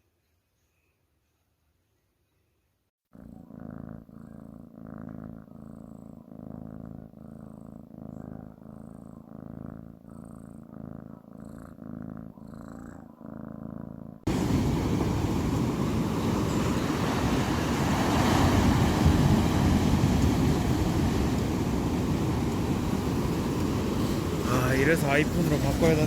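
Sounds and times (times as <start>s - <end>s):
cat purring: 3.1s - 26.0s
steady rushing noise: 14.3s - 26.0s.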